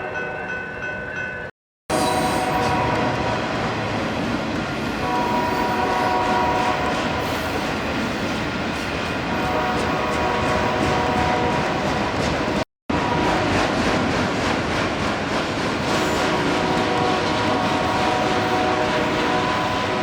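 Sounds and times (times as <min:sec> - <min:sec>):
freight train rumble: 0:01.9 - 0:20.0
locomotive horn: 0:02.0 - 0:03.4, 0:05.0 - 0:07.4, 0:09.3 - 0:11.9, 0:16.0 - 0:20.0.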